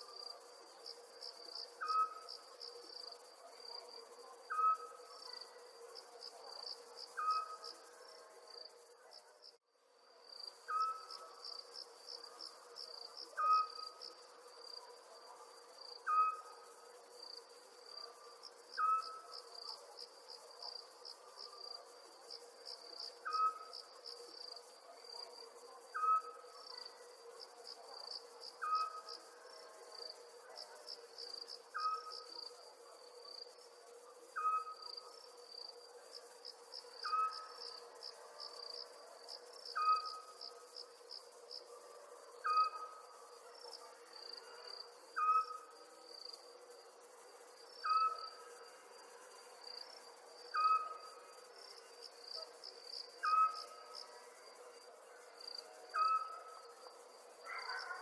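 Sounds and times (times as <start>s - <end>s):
crickets chirping: 0.0s - 58.0s
night animal call: 1.7s - 3.8s, 4.4s - 5.8s, 6.4s - 7.8s, 10.7s - 11.4s, 13.3s - 14.0s, 15.1s - 16.6s, 18.8s - 19.8s, 23.1s - 23.8s, 24.5s - 29.3s, 31.7s - 32.6s, 34.1s - 35.3s, 36.9s - 38.4s, 39.6s - 40.5s, 41.7s - 45.9s, 47.7s - 48.9s, 50.5s - 51.3s, 52.4s - 58.0s.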